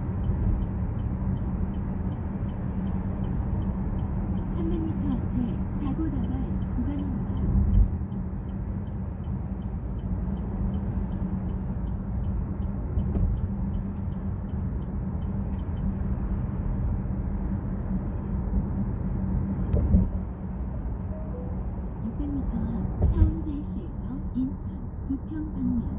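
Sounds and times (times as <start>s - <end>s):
car road and engine noise: 0.0s - 25.9s
faint regular ticking: 0.1s - 17.1s.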